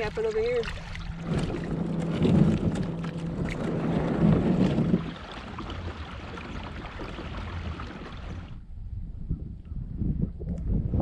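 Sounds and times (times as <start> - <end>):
steady low hum: 0.0 - 7.5
water noise: 0.0 - 8.9
wind noise: 0.0 - 11.0.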